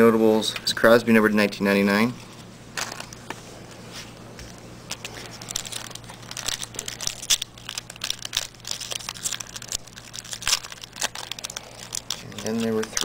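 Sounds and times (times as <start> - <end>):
foil wrappers crinkling and tearing: 4.5 - 13.0.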